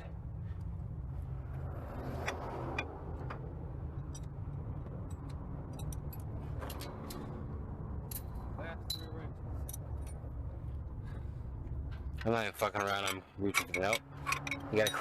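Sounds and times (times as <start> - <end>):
metal hand tools clinking: 12.2 - 15.0.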